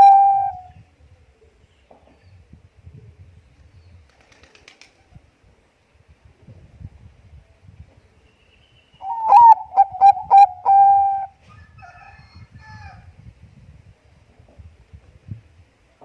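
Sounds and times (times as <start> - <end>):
dove cooing: 0.0 - 0.7, 9.0 - 11.4.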